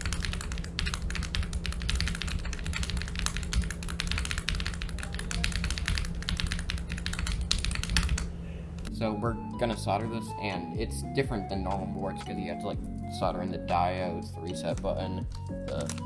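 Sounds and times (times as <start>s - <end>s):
rapid mechanical keyboard typing: 0.0s - 8.9s.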